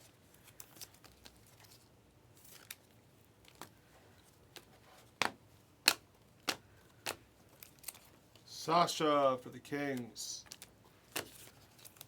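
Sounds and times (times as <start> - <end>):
cards clicking and snapping: 4.6 - 8.1.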